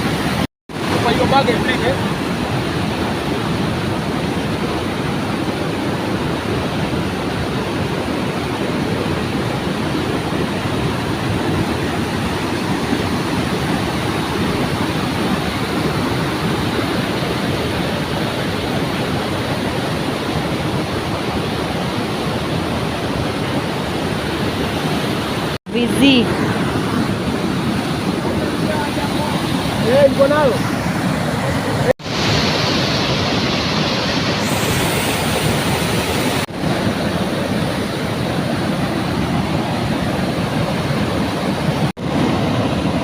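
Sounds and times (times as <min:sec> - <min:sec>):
waterfall rushing: 0:00.0 - 0:43.0.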